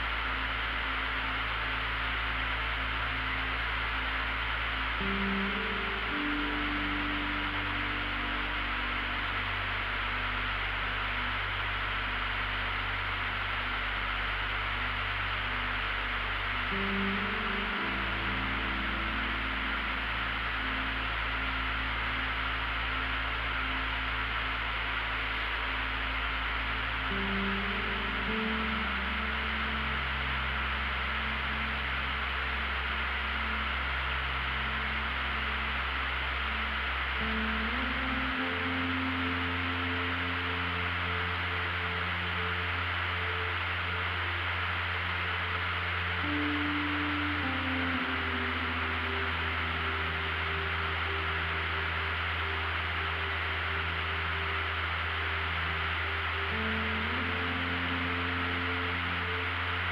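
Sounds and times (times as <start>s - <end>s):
light aircraft engine drone: 0.0s - 59.9s.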